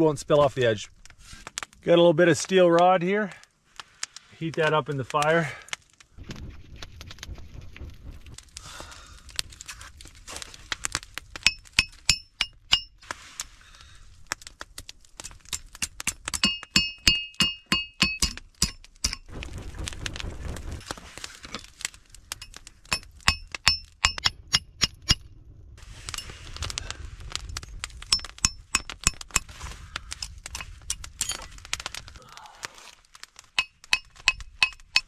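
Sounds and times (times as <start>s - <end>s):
hammer ringing on hot steel: 11.4s - 12.9s, 16.3s - 19.2s, 22.9s - 25.2s, 28.1s - 29.2s.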